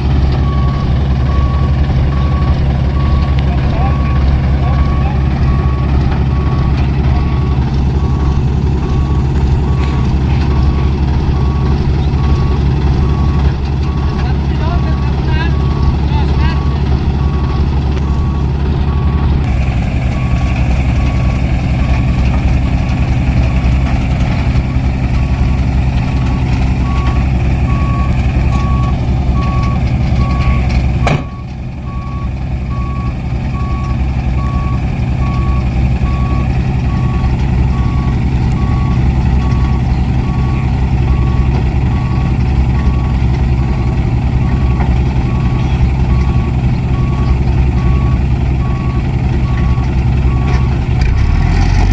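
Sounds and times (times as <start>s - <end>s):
diesel engine drone: 0.0s - 51.9s
truck reversing beeper: 0.0s - 51.9s
sharp knock: 31.0s - 31.4s.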